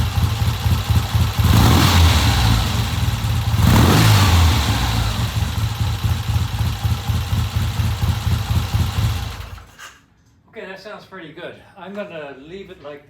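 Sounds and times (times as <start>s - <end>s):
motorcycle engine revving and idling: 0.0s - 9.8s.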